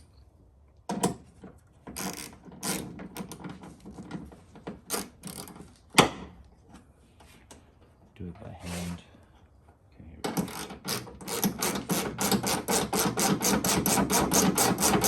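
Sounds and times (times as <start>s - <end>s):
engine parts clicking and rattling: 10.3s - 15.0s.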